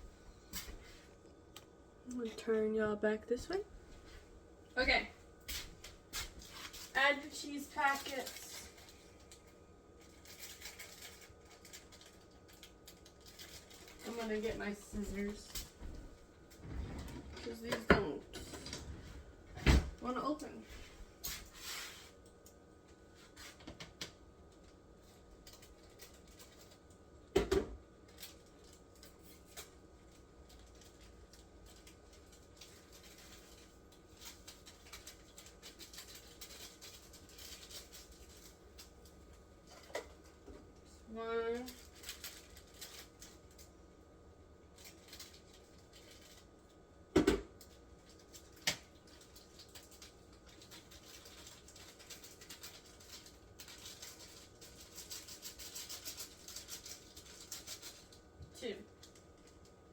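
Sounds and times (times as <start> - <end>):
small clicks and scrapes: 5.5 - 15.8, 21.2 - 27.0, 28.0 - 43.7, 44.7 - 46.8, 47.6 - 59.8
packet rustling: 6.2 - 15.4, 28.1 - 40.3, 41.4 - 43.8, 44.8 - 46.7, 47.7 - 58.2.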